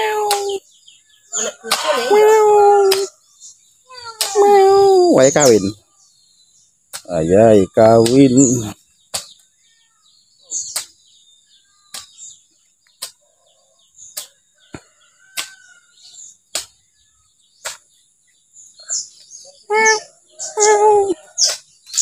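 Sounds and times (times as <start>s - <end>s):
insects droning: 0.0s - 12.9s
birds chirping: 0.0s - 22.0s
hoe chopping into soil: 1.6s - 2.0s, 14.1s - 15.6s, 16.5s - 16.8s.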